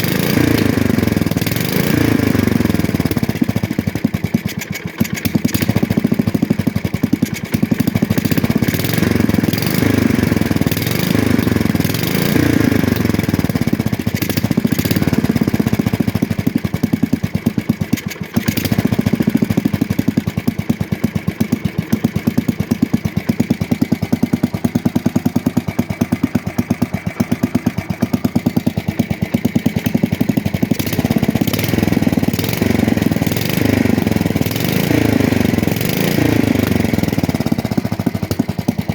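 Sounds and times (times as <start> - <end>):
small engine running with a tap: 0.0 - 20.6.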